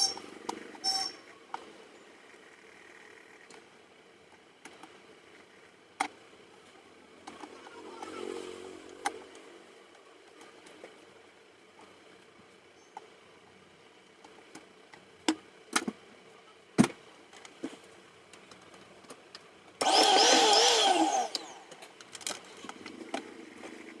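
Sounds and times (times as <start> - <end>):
mixer grinder motor running: 19.8 - 21.8.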